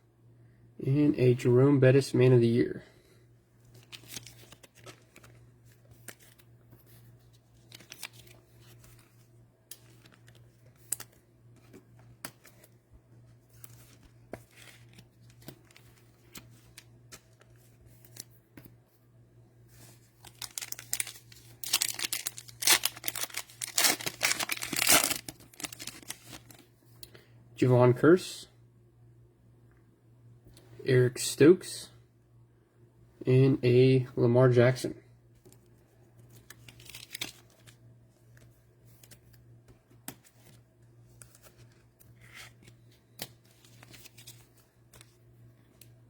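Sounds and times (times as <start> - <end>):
cards ticking when handled: 9.7 - 12.7
cellophane wrapper tearing and crinkling: 20.2 - 26.6, 36.5 - 37.8.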